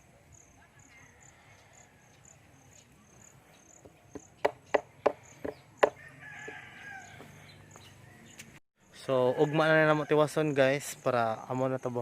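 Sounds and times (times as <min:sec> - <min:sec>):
crickets chirping: 0:00.0 - 0:12.0
hammer knocks: 0:04.1 - 0:06.0.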